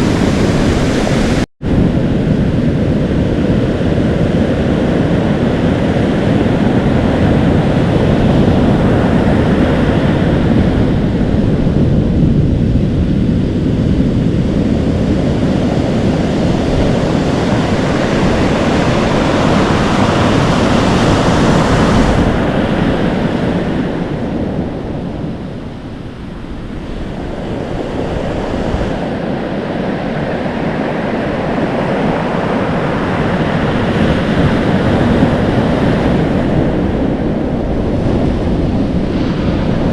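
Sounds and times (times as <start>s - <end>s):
waves crashing and foaming: 0.0s - 39.9s
wind buffeting microphone: 0.0s - 39.9s.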